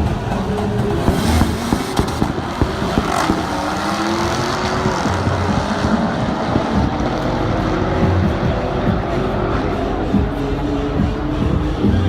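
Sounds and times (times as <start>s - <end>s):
car engine revving: 0.0s - 12.0s
car engines running: 0.0s - 12.0s.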